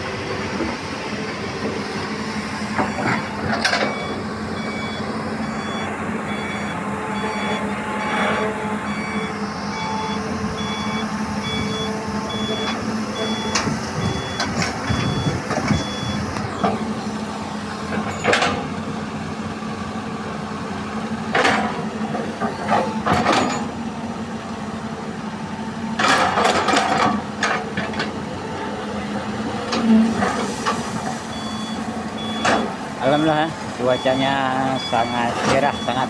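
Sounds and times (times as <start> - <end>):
truck reversing beeper: 0.0 - 21.1, 21.8 - 23.8, 29.5 - 36.0
diesel engines running: 0.0 - 36.0.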